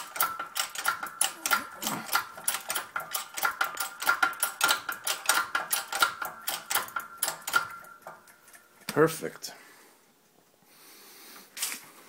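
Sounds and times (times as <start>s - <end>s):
hydraulic press clicking: 0.0s - 8.4s.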